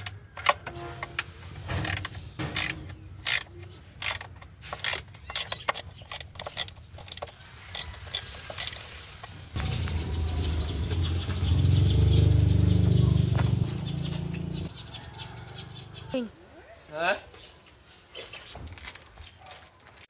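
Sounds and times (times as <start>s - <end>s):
ratchet wrench clicking: 1.8s - 9.4s.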